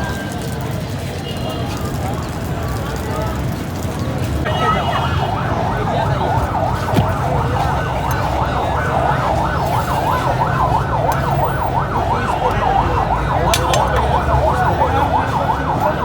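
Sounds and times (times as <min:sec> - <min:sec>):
siren wailing: 0:04.4 - 0:16.0.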